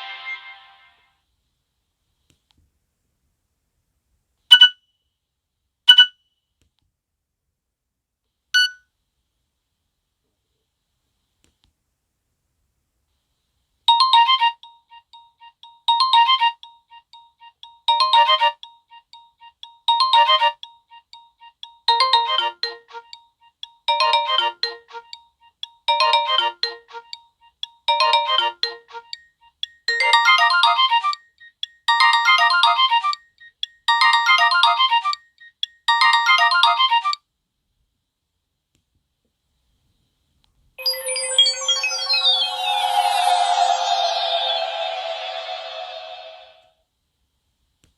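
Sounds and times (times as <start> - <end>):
electronic phone ringtone: 0.0 - 0.8, 14.0 - 33.2, 33.9 - 37.2, 40.8 - 46.6.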